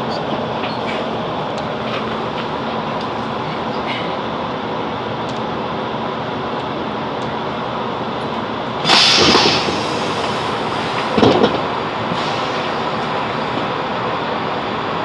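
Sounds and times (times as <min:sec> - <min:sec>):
diesel train running noise: 0:00.0 - 0:15.0
loud hiss: 0:08.8 - 0:13.5.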